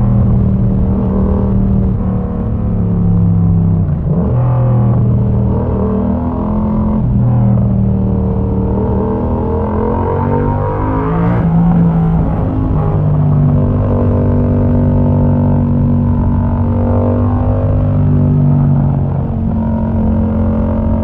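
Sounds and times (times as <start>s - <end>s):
loud motorcycle engine running: 11.2s - 21.0s.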